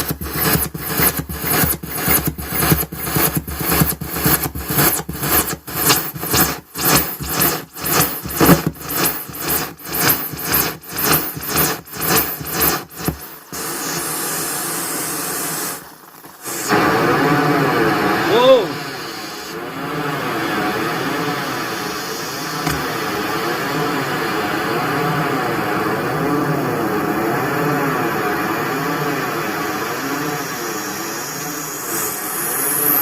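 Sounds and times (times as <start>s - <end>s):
pulsing mixer feedback: 0.0s - 14.6s.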